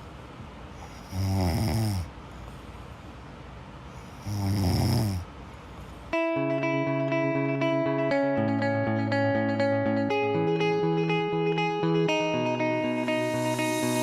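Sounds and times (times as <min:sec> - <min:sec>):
person snoring: 0:00.8 - 0:02.1, 0:04.1 - 0:05.3
music: 0:06.2 - 0:14.0.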